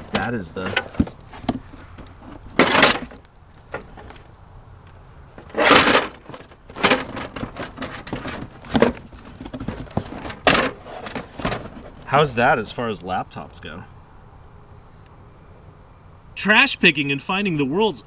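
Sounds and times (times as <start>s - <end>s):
objects rustling and clunking: 0.0s - 12.3s.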